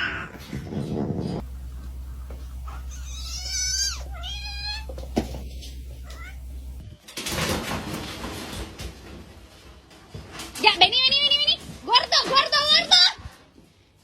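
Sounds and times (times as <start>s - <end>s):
burst of noise: 1.4s - 6.8s
low steady hum: 1.4s - 6.9s
cat meowing: 3.0s - 4.9s, 6.0s - 6.4s.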